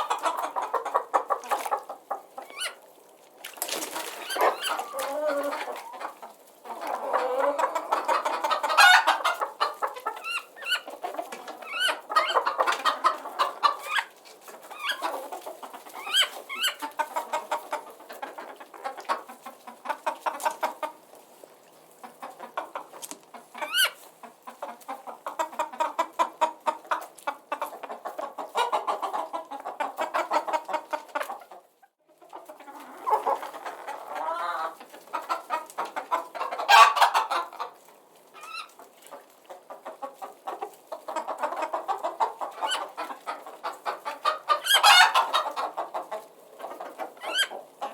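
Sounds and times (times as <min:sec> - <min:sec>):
chicken squawks: 0:00.0 - 0:02.8, 0:03.8 - 0:20.9, 0:23.4 - 0:26.6, 0:32.6 - 0:37.7, 0:39.9 - 0:47.9
chickens clucking: 0:00.0 - 0:47.9.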